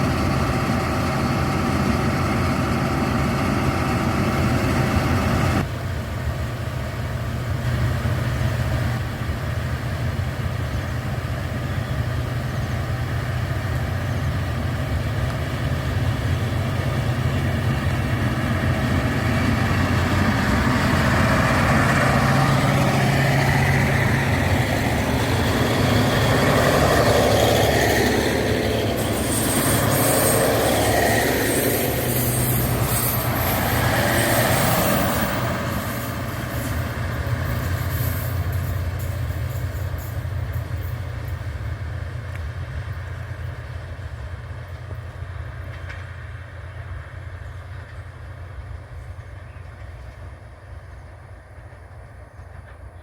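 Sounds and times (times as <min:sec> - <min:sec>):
diesel engine humming: 0:00.0 - 0:49.3
rushing noise: 0:14.9 - 0:41.6.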